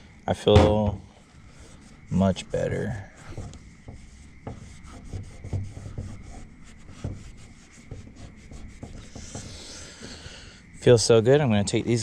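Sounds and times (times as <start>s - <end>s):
cloth rubbing steering wheel: 1.4s - 10.2s.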